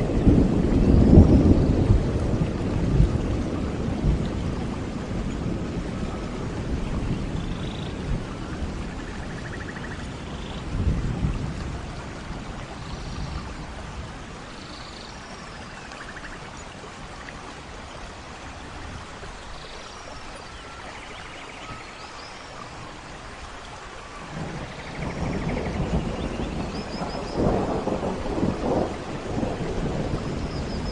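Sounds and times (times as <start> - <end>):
thunder rumble: 0.0 - 14.5, 24.2 - 30.9
rain falling in forest: 0.0 - 30.9
faint bird chirps and trills: 7.0 - 10.7, 19.4 - 23.1, 24.0 - 27.7, 30.2 - 30.9.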